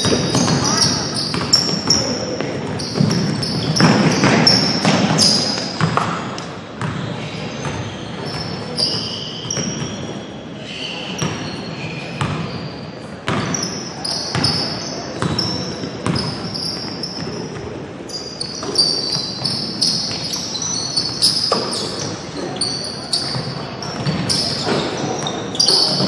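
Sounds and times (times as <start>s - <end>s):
voices murmuring: 0.0s - 6.0s, 13.5s - 26.0s
basketball bouncing: 0.0s - 7.0s, 13.3s - 13.6s, 14.3s - 16.5s
sneakers squeaking on gym floor: 0.0s - 26.0s.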